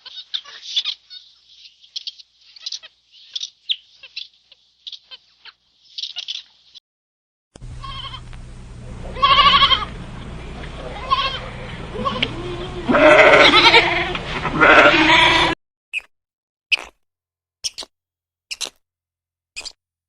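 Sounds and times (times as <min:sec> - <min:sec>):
high-pitched squeaking animal calls: 0:00.0 - 0:01.4, 0:02.0 - 0:06.5, 0:09.1 - 0:09.9, 0:10.8 - 0:16.1, 0:17.6 - 0:17.9, 0:18.5 - 0:18.8, 0:19.6 - 0:19.8
low hum: 0:07.6 - 0:14.6
wavering bleat: 0:07.8 - 0:08.2, 0:09.1 - 0:09.9, 0:10.8 - 0:15.6.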